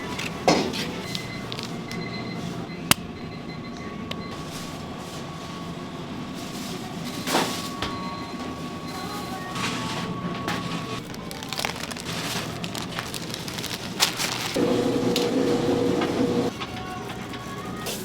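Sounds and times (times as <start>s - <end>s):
machine hum with faint tone: 14.6s - 16.5s.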